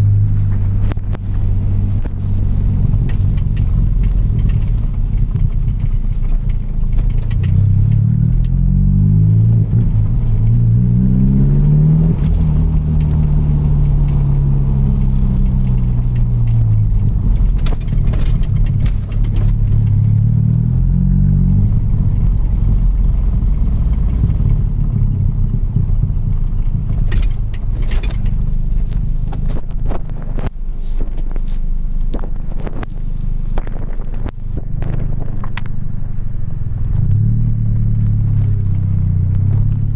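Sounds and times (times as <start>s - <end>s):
car engine revving: 0.0s - 39.9s
sharp clicks and knocks: 0.3s - 8.6s, 12.0s - 20.2s, 21.3s - 35.8s.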